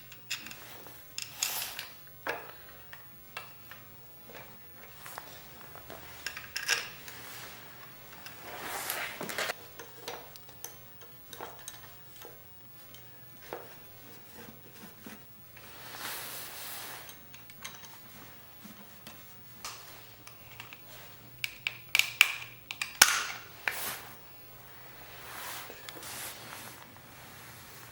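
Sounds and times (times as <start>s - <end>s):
metal tools clinking: 5.8s - 11.9s.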